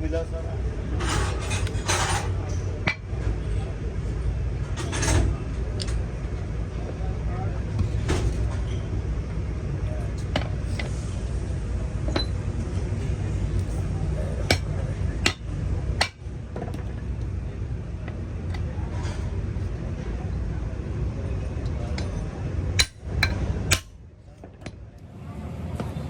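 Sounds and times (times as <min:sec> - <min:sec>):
steady low rumble: 0:00.0 - 0:26.0
tools striking metal: 0:12.1 - 0:12.4, 0:14.4 - 0:16.9, 0:21.9 - 0:24.0.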